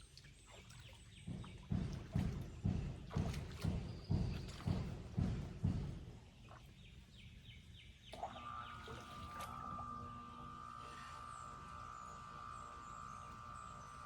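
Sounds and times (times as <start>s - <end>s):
steady tonal hum: 8.2s - 14.0s.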